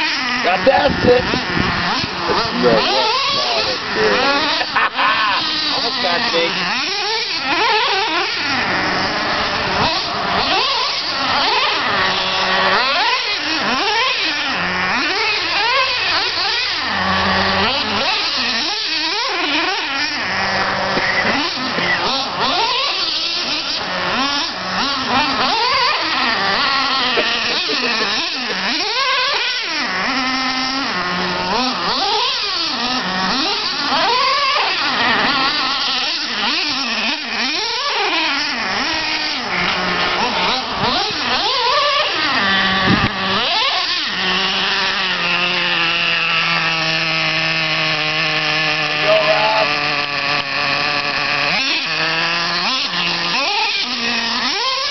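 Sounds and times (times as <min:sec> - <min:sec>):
nitro engine revving: 0:00.0 - 0:54.9.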